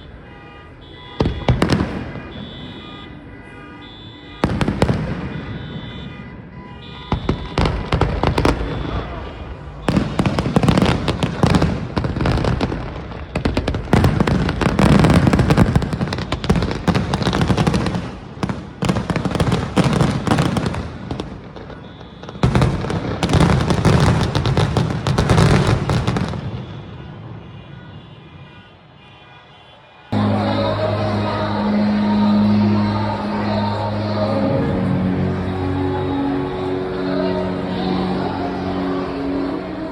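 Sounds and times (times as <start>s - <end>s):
fireworks bangs and crackles: 1.0s - 2.9s, 4.4s - 27.5s.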